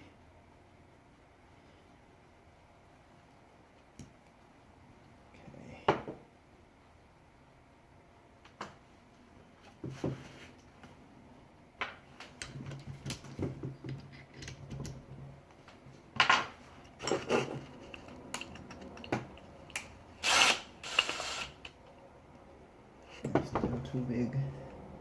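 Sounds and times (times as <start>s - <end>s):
metal parts clicking and tapping: 12.4s - 15.0s, 16.3s - 19.9s
metal parts scraping and rattling: 16.6s - 19.4s, 20.2s - 21.5s.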